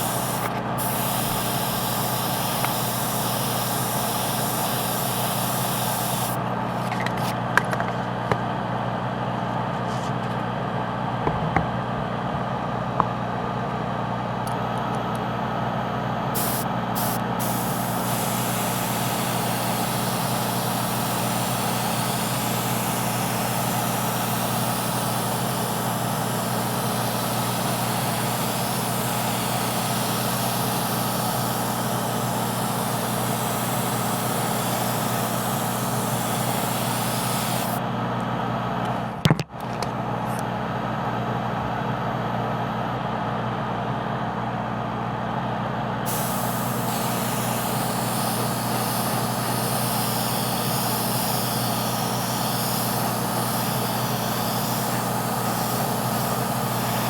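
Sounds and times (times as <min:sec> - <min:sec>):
airbrush air hissing: 0:00.0 - 0:06.4, 0:16.3 - 0:37.8, 0:46.0 - 0:57.0
air compressor humming: 0:00.0 - 0:57.0.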